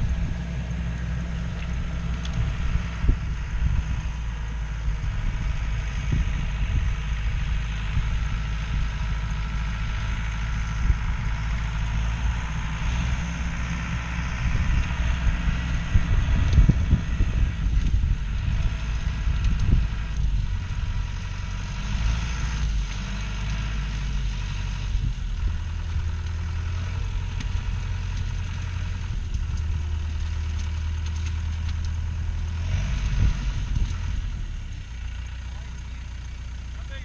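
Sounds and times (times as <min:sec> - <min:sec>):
bulldozer diesel engine running: 0:00.0 - 0:37.0.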